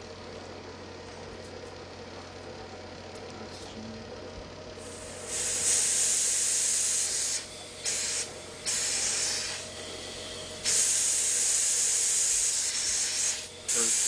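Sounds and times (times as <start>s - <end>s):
spray nozzle hissing: 4.8s - 9.6s, 10.6s - 14.0s.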